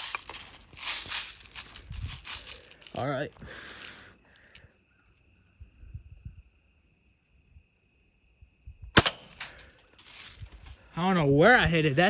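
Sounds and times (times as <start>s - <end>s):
bb gun shot crack: 9.0s - 9.5s.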